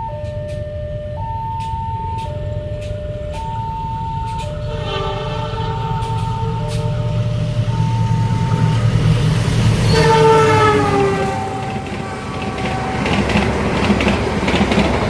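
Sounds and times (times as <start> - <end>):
level-crossing two-tone alarm: 0.0 - 8.8
steady low rumble: 0.0 - 9.9
horn-like chord: 4.5 - 8.6, 9.9 - 13.3.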